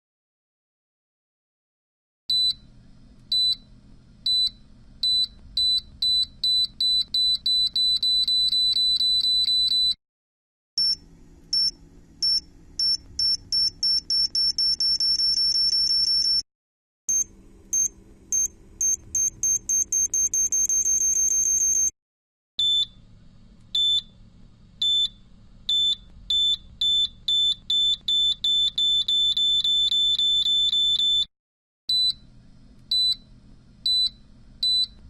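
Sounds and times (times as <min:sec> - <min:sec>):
electronic timer beeping: 0:04.3 - 0:10.0, 0:10.8 - 0:16.4, 0:17.1 - 0:21.9, 0:22.6 - 0:23.0, 0:23.8 - 0:24.1, 0:24.8 - 0:31.3.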